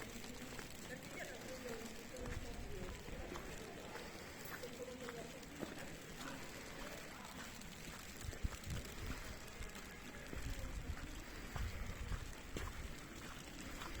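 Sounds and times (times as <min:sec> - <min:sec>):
snow falling on umbrella: 0:00.0 - 0:14.0
wind rumble on microphone: 0:08.2 - 0:14.0.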